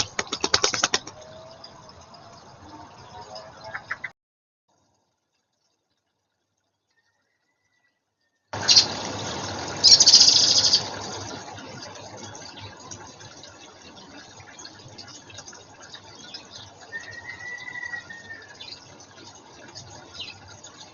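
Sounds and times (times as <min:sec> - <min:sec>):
water splashing in a pond: 0:00.0 - 0:04.1, 0:08.6 - 0:20.9.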